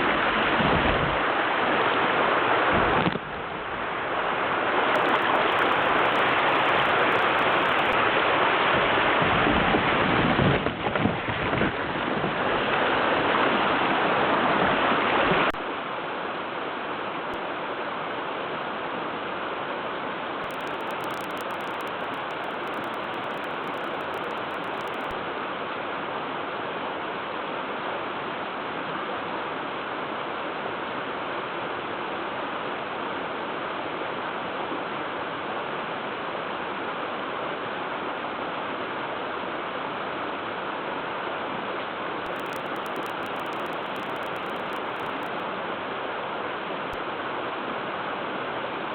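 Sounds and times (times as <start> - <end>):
creek water running: 0.0 - 10.2.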